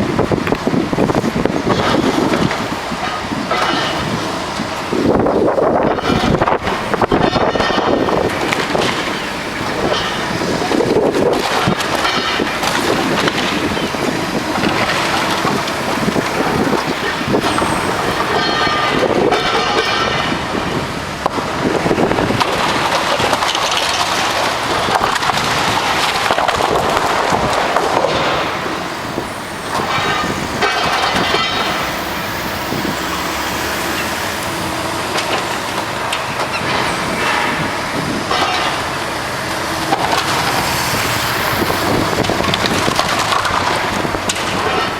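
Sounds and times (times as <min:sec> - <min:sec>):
demolition machinery working: 0:00.0 - 0:44.9
high-pitched metallic squeals: 0:11.6 - 0:20.6, 0:28.1 - 0:42.9.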